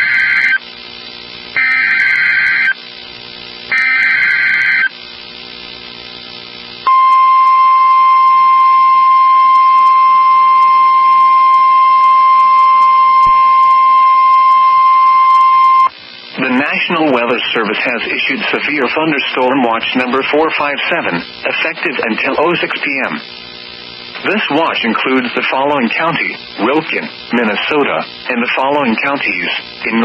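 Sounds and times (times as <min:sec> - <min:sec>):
steady single-pitched alarm tone: 0:00.0 - 0:00.6, 0:01.6 - 0:02.8, 0:03.7 - 0:05.0, 0:06.9 - 0:15.9
buzzy digital data tones: 0:00.0 - 0:00.7, 0:01.5 - 0:02.9, 0:03.7 - 0:05.6, 0:06.8 - 0:30.0.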